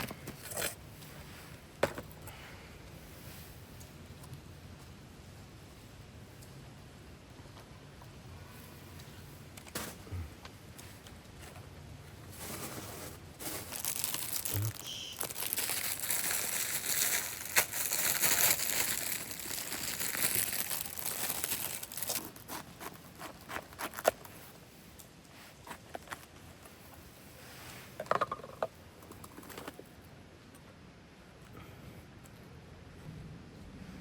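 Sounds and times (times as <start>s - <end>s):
packaging crinkling and rustling: 12.3s - 24.6s.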